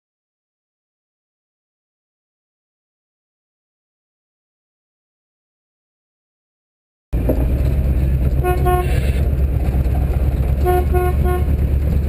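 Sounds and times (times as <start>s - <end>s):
vehicle engine running: 7.2s - 12.0s
horn toots: 8.4s - 9.2s, 10.6s - 11.6s.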